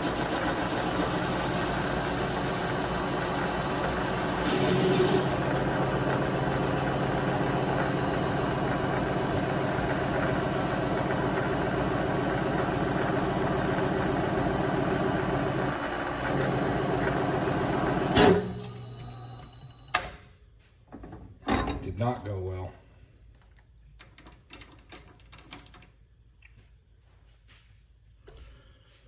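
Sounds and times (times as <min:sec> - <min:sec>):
hum of cutting: 0:00.0 - 0:19.8
lathe motor and gear whine: 0:00.0 - 0:20.0.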